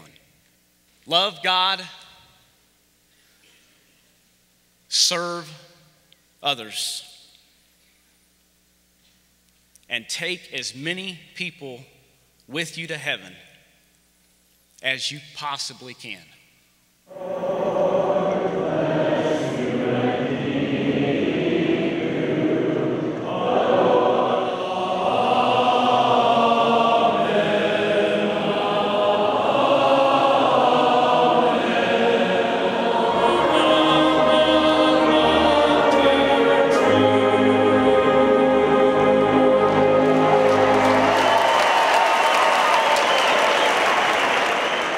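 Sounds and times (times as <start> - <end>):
choir singing sustained chords: 17.1 - 44.9.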